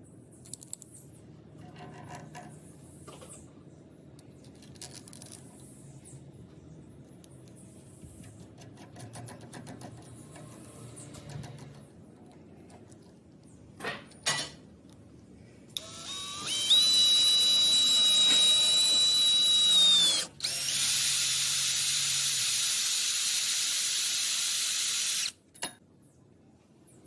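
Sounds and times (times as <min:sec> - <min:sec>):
electric drill whining: 0:15.8 - 0:25.4.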